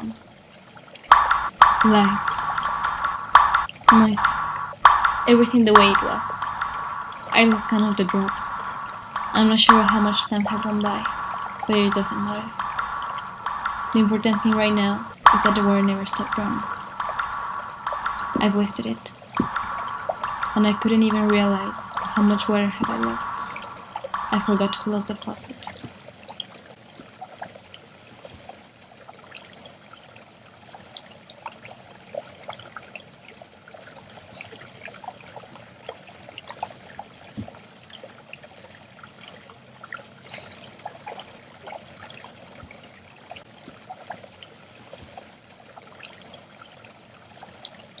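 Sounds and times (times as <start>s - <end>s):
faucet water splashing into sink: 1.1s - 25.4s.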